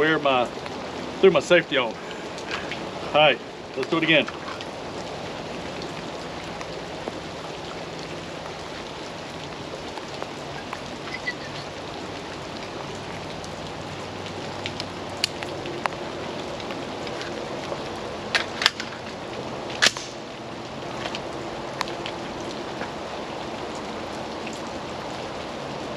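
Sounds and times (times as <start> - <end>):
heavy rain falling: 0.0 - 25.9.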